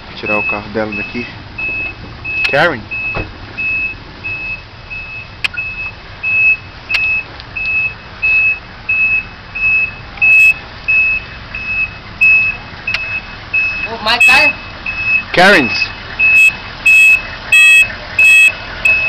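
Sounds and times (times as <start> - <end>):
low engine rumble: 0.0 - 19.0
truck reversing alarm beeping: 0.2 - 19.0.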